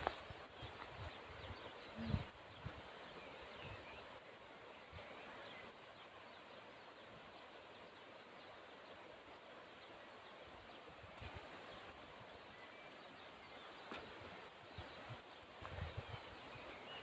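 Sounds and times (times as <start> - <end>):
faint bird chirps: 0.1 - 17.0.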